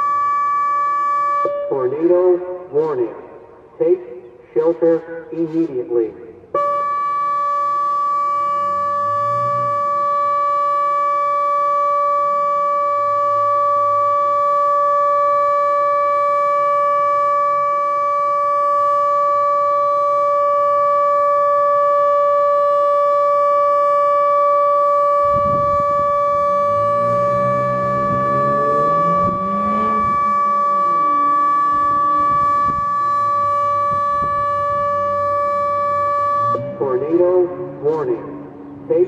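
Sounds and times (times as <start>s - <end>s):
steady electronic siren tone: 0.0s - 4.9s, 6.3s - 39.0s
low rising sound: 25.8s - 33.4s.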